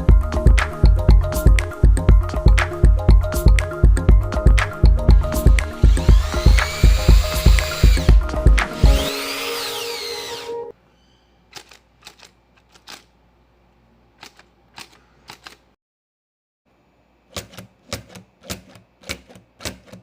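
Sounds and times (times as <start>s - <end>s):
loud background music: 0.0s - 10.7s.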